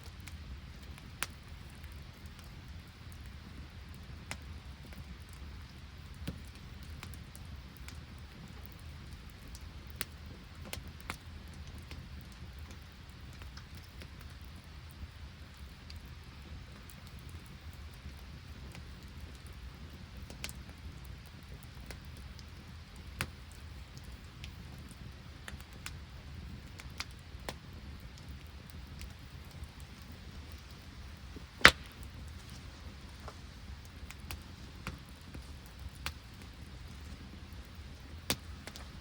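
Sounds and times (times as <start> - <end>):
campfire crackling and popping: 0.0 - 39.0
low background noise: 0.0 - 39.0
loud crack: 29.6 - 37.2.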